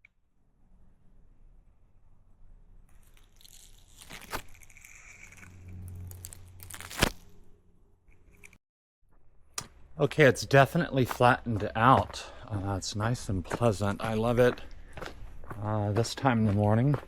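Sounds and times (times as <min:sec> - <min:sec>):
footsteps crunching on a trail: 0:10.0 - 0:17.0.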